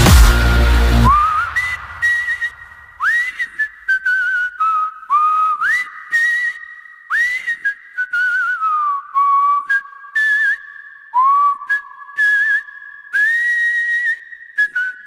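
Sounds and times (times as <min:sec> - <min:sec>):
person whistling a melody: 0:01.0 - 0:15.0.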